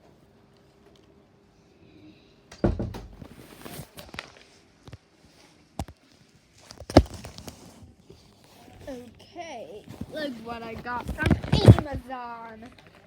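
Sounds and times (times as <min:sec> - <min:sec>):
objects thumping and knocking: 0:02.6 - 0:03.5, 0:09.9 - 0:12.0
rustling: 0:09.8 - 0:13.0.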